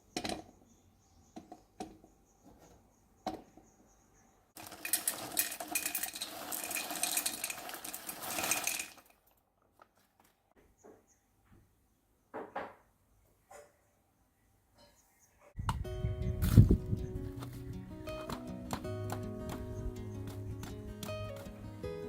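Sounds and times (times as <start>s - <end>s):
small hard objects clattering: 4.6s - 10.3s, 16.4s - 21.5s.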